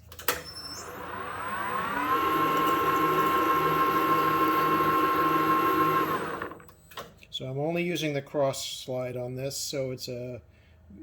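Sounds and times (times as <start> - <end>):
lathe motor whine spinning up: 0.5 - 6.7.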